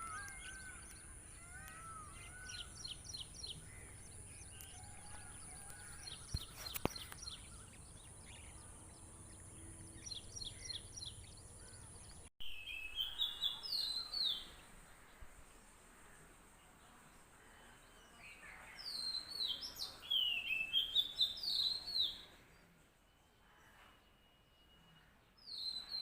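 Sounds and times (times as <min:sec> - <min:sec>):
descending bird calls: 0:00.0 - 0:14.6
birds chirping: 0:00.0 - 0:26.0.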